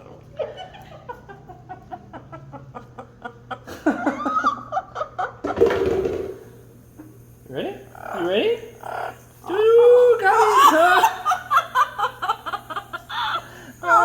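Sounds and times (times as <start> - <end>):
parrot laughing: 10.2 - 14.0.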